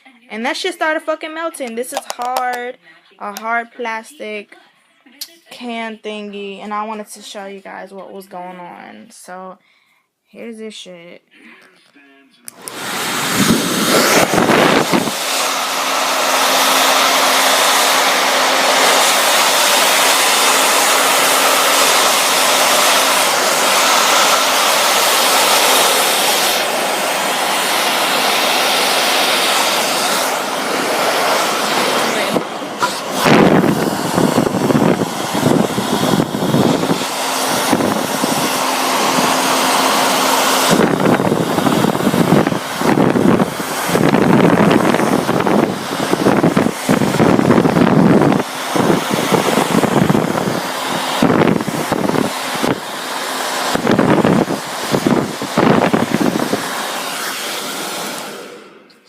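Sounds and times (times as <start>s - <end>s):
blow dryer running: 0.0s - 4.4s, 12.5s - 59.0s.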